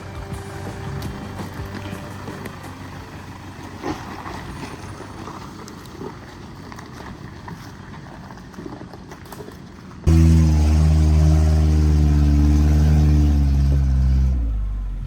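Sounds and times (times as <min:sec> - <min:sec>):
off-road vehicle engine and tyres: 0:00.0 - 0:15.0.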